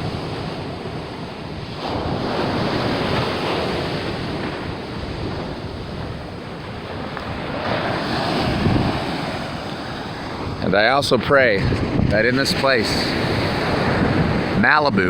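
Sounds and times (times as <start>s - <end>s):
surf breaking on shore: 0.0s - 15.0s
wind buffeting microphone: 0.0s - 15.0s.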